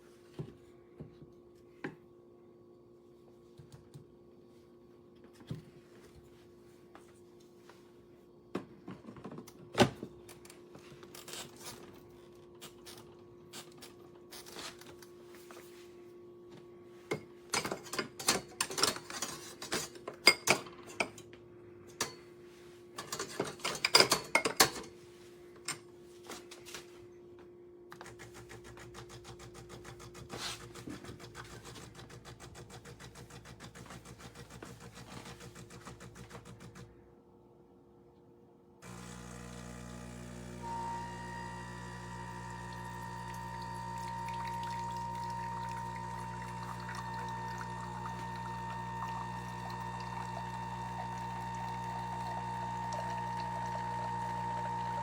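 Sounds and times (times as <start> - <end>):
espresso machine pulsing hum: 38.8 - 55.0.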